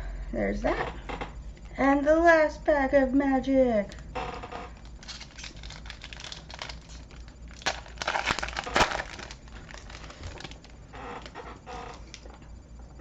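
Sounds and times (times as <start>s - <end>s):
foil wrapper crinkling: 4.7s - 12.3s.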